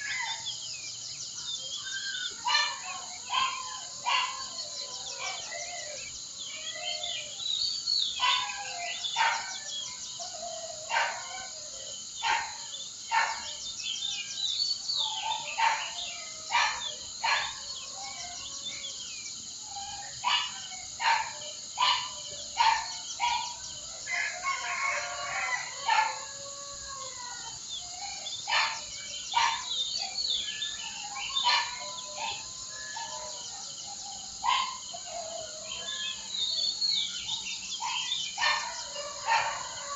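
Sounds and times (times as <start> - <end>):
birds chirping and whistling: 0.0 - 39.9
high insect drone: 0.0 - 39.9
roosters crowing: 1.8 - 7.4, 19.8 - 39.9.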